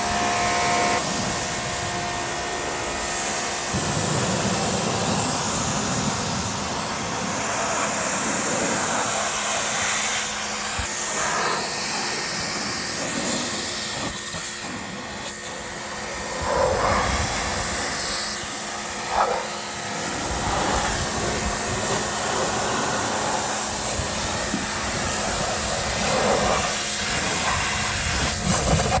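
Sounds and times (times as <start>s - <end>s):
pressure washer spray hiss: 0.1s - 29.0s.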